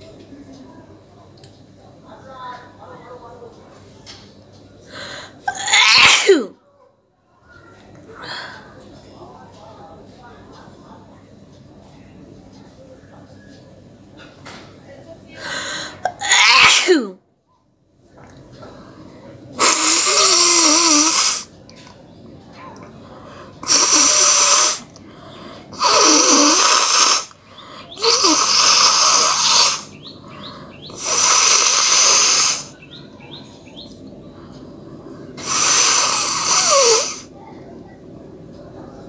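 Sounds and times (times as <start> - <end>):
person blowing their nose: 19.6 - 21.5, 23.6 - 24.9, 25.8 - 27.3, 28.0 - 29.9, 30.9 - 32.7, 35.4 - 37.3.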